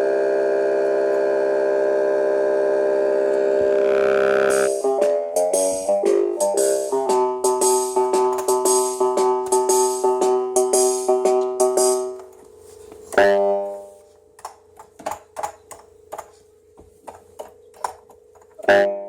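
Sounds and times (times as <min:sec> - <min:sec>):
electronic keyboard chord: 0:00.0 - 0:14.6, 0:17.6 - 0:19.0
ticking beat: 0:04.5 - 0:12.4.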